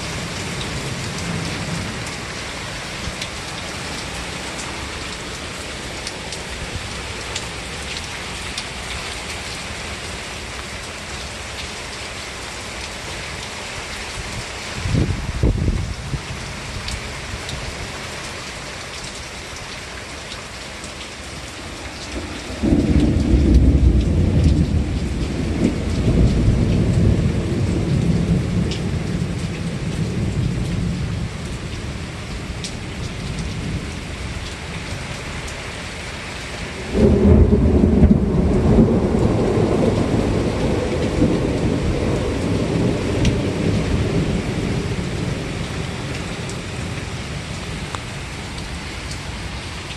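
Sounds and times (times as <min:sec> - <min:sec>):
steady rain falling: 0:00.0 - 0:49.9
thunder rumbling: 0:22.0 - 0:32.6, 0:36.8 - 0:48.7.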